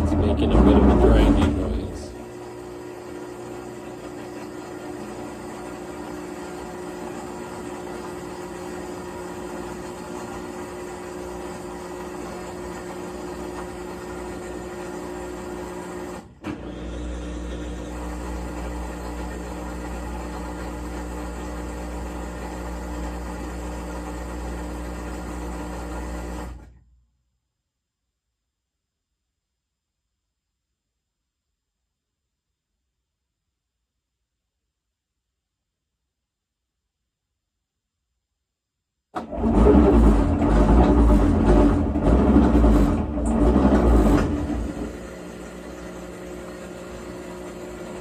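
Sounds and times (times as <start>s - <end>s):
washing machine spinning: 0.0s - 26.6s, 39.2s - 48.0s.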